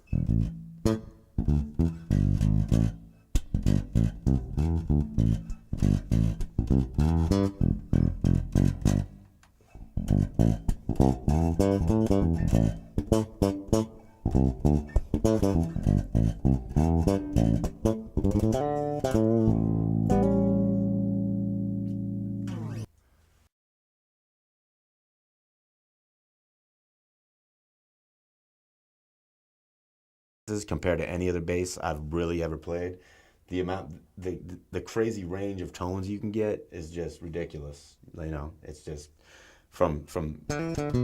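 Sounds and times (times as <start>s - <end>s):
plucked electric bass guitar: 0.0s - 22.9s, 40.3s - 41.0s.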